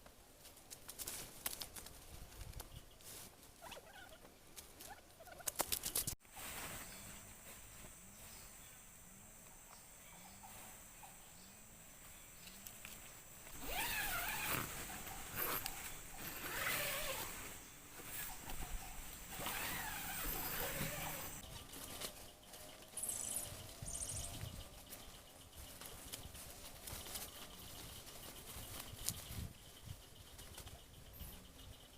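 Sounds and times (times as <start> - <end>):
high insect chirps: 5.3 - 31.9
insects shrilling: 12.4 - 22.0, 22.8 - 30.7.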